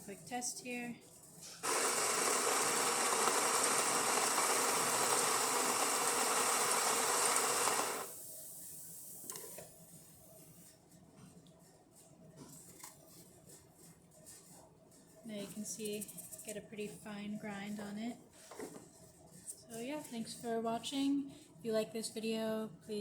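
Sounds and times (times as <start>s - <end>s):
coffee grinder grinding: 1.6s - 8.1s.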